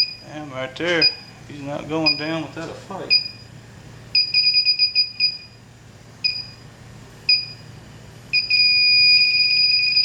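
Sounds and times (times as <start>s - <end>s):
two-tone alarm beeps: 0.0s - 0.3s, 3.1s - 3.5s, 4.2s - 5.6s, 6.2s - 6.6s, 7.3s - 7.7s, 8.3s - 10.0s.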